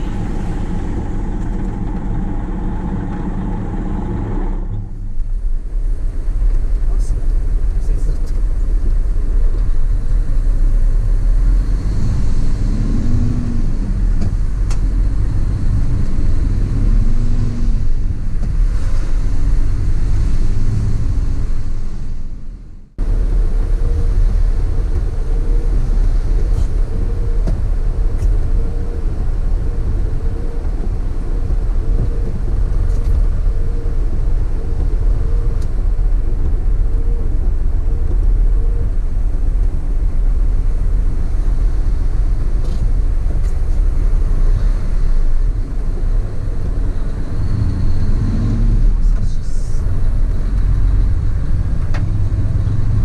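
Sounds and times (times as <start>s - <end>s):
rising and falling tone: 0.0s - 5.2s
engine and road rumble: 0.0s - 53.0s.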